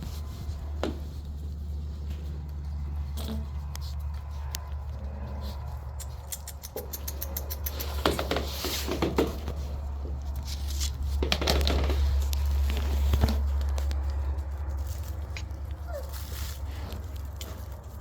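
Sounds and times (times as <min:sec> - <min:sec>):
paws pattering on floor: 0:07.1 - 0:18.0.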